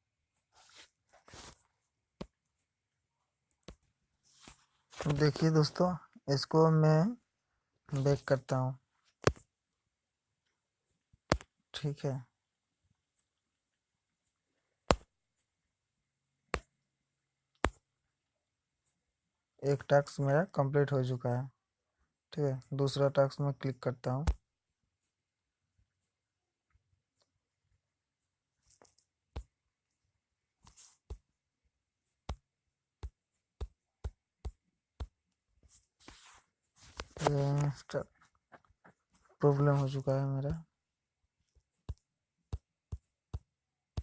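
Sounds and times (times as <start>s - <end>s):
device clicks and taps: 11.2s - 11.5s, 14.9s - 15.1s.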